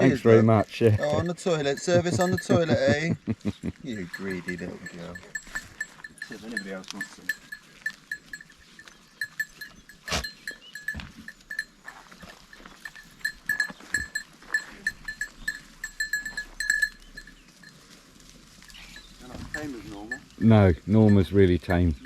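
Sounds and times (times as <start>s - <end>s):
goats feeding: 0.0s - 22.0s
small bell clinking: 1.0s - 18.0s, 18.6s - 22.0s.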